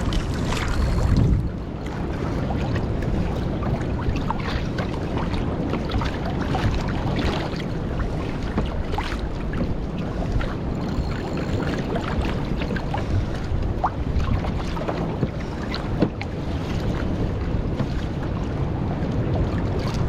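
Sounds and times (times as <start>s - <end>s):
water splashes and slaps: 0.0s - 20.0s
wind buffeting microphone: 0.0s - 20.0s.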